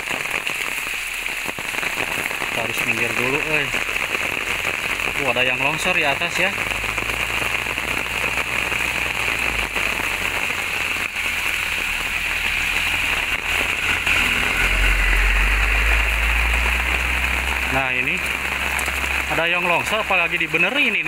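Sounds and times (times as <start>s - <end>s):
heavy rain falling: 0.0s - 21.0s
low rumble: 6.6s - 20.4s.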